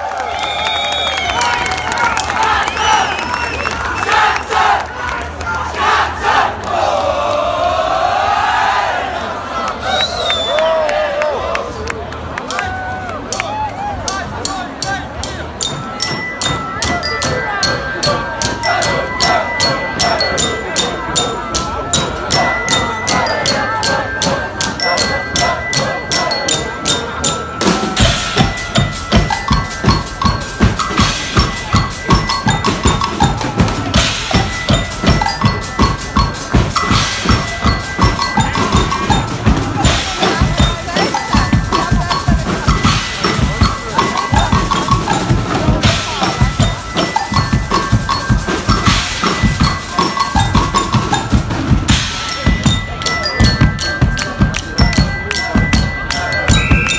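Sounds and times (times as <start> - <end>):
live band music: 14.2 - 56.9
bass drum and snare beat: 14.8 - 56.9.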